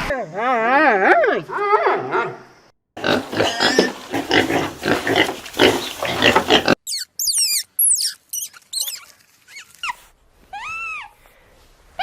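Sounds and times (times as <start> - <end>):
farm animal grunting calls: 3.0 - 6.8.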